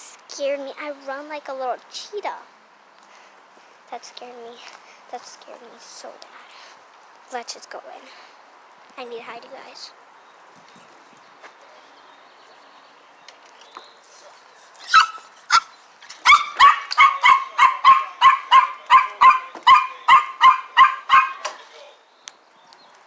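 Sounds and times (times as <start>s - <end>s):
dog barking: 14.9s - 21.5s.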